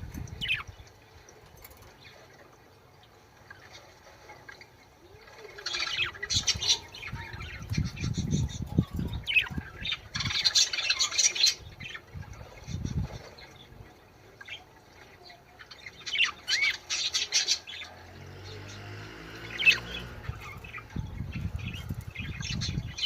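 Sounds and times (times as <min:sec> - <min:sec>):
budgerigars chirping and squawking: 0:00.2 - 0:00.7, 0:05.6 - 0:13.7, 0:15.6 - 0:23.0.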